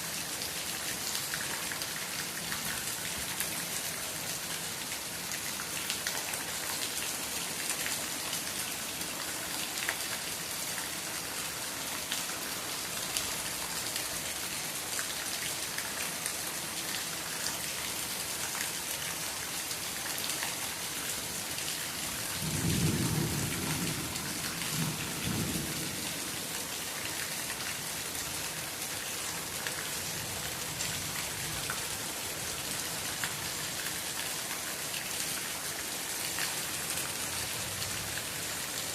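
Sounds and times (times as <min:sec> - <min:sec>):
steady rain falling: 0:00.0 - 0:38.9
low rumble of thunder: 0:22.4 - 0:26.4.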